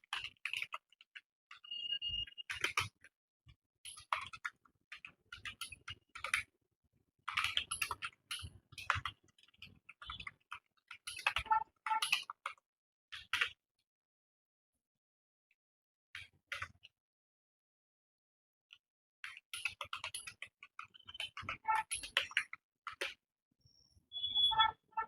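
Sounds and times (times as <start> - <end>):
keyboard typing clicks: 11.3 - 12.2, 21.0 - 22.4.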